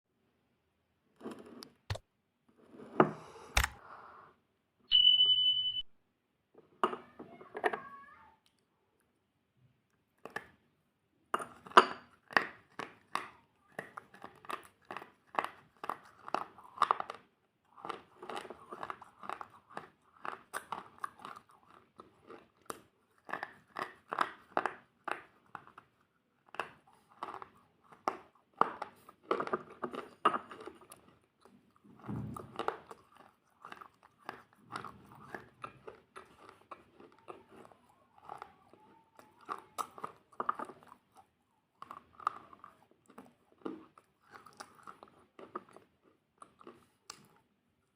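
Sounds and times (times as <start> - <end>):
crunchy food being chewed: 11.4 - 47.9.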